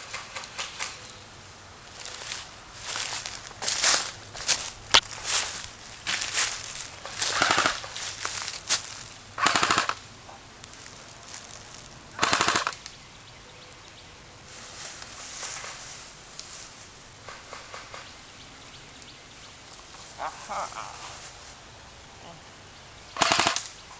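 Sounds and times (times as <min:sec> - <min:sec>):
airsoft gun automatic bursts: 0:07.3 - 0:08.0, 0:09.4 - 0:10.0, 0:12.2 - 0:12.8, 0:23.2 - 0:23.7
airsoft gun single shots: 0:09.4 - 0:10.0, 0:12.2 - 0:12.8, 0:23.2 - 0:23.7.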